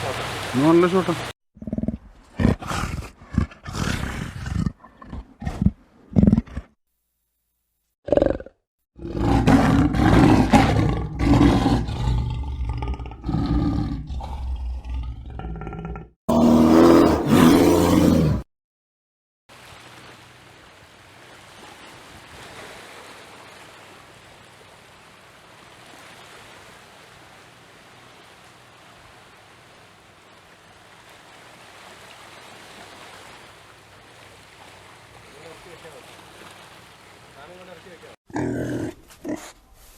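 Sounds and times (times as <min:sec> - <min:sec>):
large wild animal roaring: 0:08.1 - 0:18.4, 0:38.3 - 0:39.5.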